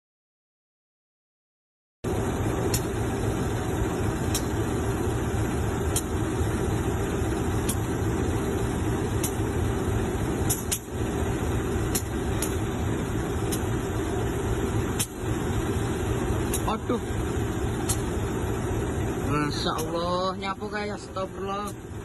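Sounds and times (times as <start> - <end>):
vehicle engine and road rumble: 2.0 - 22.0.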